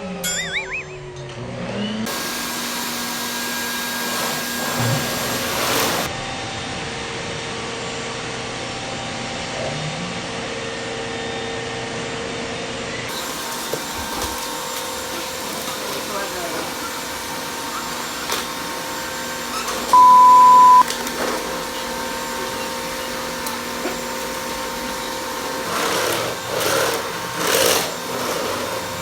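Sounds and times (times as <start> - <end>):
warbling whistle: 0.2 - 1.2, 19.9 - 20.8
vacuum cleaner running: 2.1 - 29.0.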